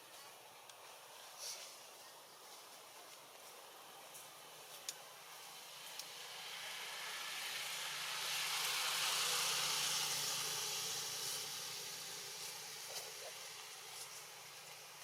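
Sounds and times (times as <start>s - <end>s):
vehicle passing by: 5.5s - 14.8s.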